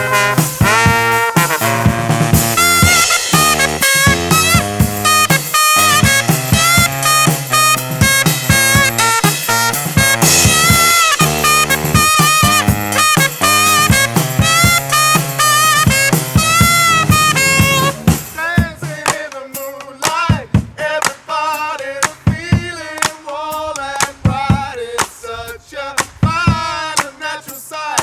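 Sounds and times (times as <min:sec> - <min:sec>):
held horn chords: 0:00.0 - 0:18.6
drum kit: 0:00.0 - 0:25.3
brass band playing pop tune: 0:00.0 - 0:28.0.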